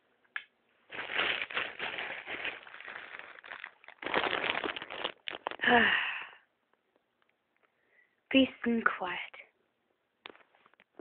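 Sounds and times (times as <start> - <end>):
bedclothes rustling: 0.8 - 5.7
person sighing: 5.6 - 6.5.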